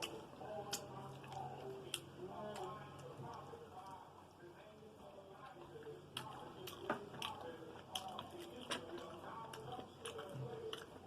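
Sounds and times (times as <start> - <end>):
lip-smacking: 0.0 - 3.2
wet chewing: 0.0 - 11.0.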